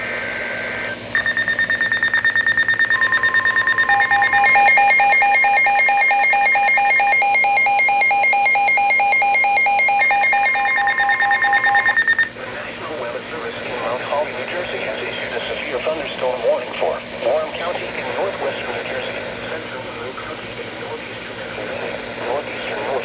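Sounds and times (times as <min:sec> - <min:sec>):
steady warning tone: 0:00.1 - 0:12.3
rapid electronic pulsing alarm: 0:01.1 - 0:12.3
pulsing beep: 0:01.2 - 0:12.3.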